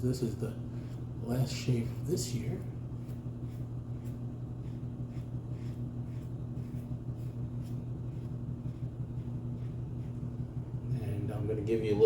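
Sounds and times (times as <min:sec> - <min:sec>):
steady low hum: 0:00.0 - 0:12.0
razor scraping stubble: 0:01.5 - 0:10.3.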